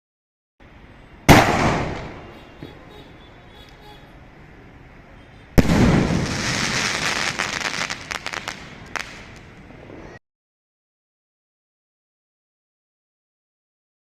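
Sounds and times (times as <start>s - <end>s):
firework bang: 1.3s - 2.8s, 5.6s - 10.1s.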